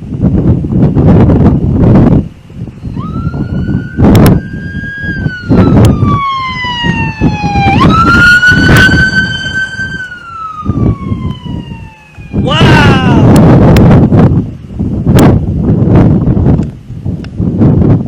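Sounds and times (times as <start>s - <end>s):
wind buffeting microphone: 0.0s - 18.0s
tornado siren wailing: 2.7s - 14.0s.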